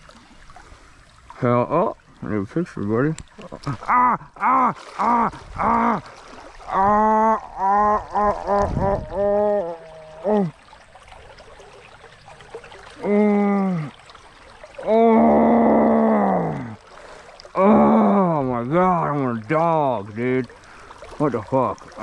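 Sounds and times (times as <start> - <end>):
voice making wordless pitched sounds: 6.7 - 10.5.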